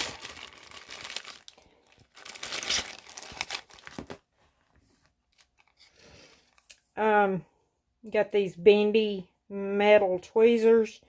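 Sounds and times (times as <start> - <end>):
crinkly packaging torn open: 0.0 - 4.3.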